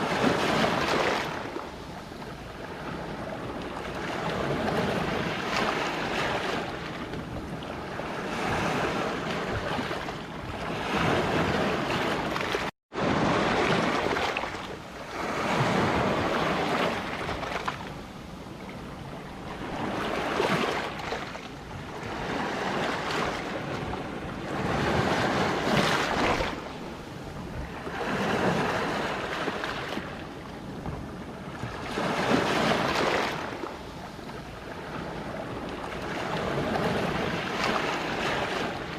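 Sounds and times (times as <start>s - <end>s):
waves breaking on rocks: 10.6s - 17.9s, 19.6s - 21.3s, 24.5s - 26.8s, 27.5s - 30.1s.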